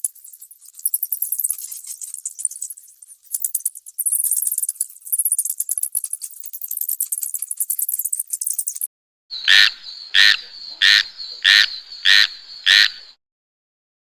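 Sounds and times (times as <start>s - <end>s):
rattle of high clicks: 0.0s - 8.9s
animal call: 9.4s - 13.2s.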